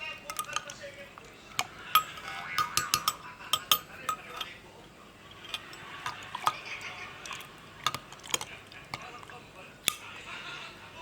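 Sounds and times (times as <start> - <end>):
spoon clinking against cup: 0.2 - 0.9, 1.6 - 4.6, 5.3 - 9.3.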